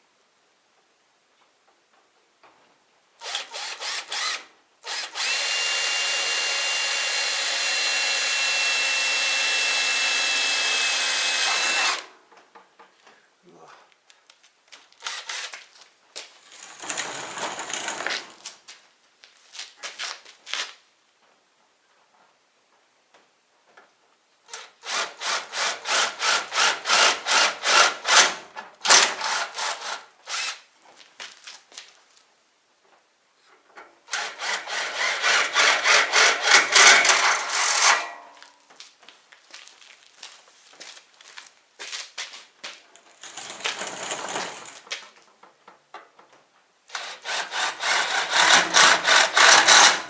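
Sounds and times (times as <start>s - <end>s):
hand tool scraping material: 34.1s - 38.3s, 43.2s - 44.8s, 46.9s - 50.0s
rubbing and scraping: 43.1s - 45.1s.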